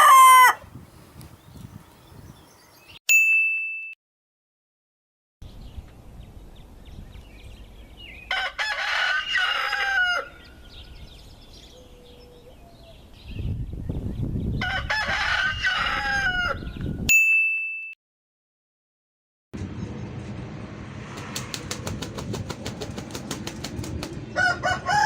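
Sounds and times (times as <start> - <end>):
rooster crowing: 0.0 - 0.6, 8.3 - 10.5, 14.6 - 16.7, 24.4 - 25.0
short high ding: 3.1 - 4.0, 17.1 - 18.0
low rumble: 19.6 - 23.2.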